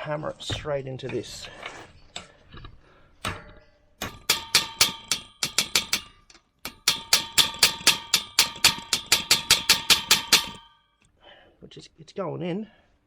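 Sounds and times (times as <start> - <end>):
hammer striking metal key: 3.2 - 10.8.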